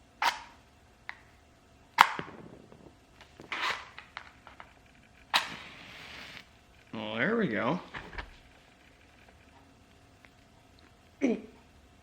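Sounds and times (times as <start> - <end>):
match striking a matchbox: 2.0 - 6.5.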